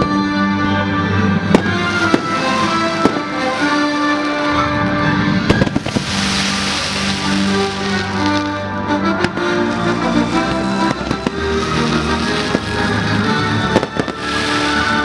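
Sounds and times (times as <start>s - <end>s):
music soundtrack: 0.0s - 15.0s
fireworks bangs: 1.5s - 4.6s, 5.4s - 8.6s, 9.2s - 15.0s
fireworks hiss: 1.6s - 4.4s, 5.5s - 8.6s, 9.3s - 15.0s.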